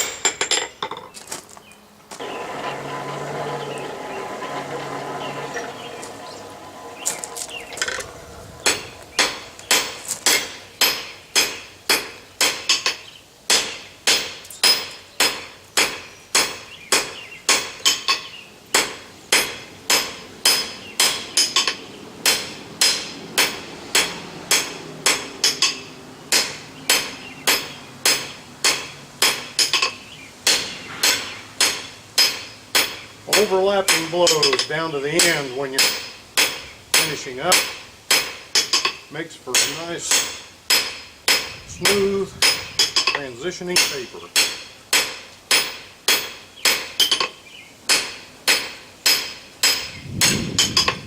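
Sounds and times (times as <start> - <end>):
steady rushing noise: 2.1 - 11.9, 49.8 - 51.0
hammer striking steel on anvil: 8.6 - 18.2, 18.8 - 47.3, 47.9 - 51.0.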